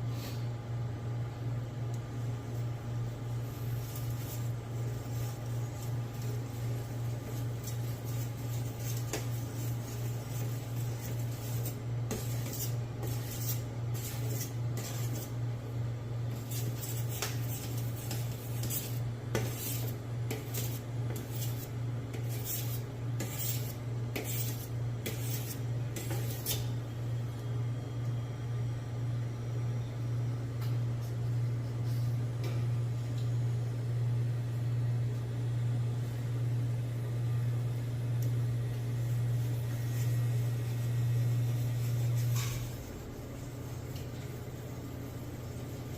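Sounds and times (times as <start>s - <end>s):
steady low hum: 0.0s - 45.9s.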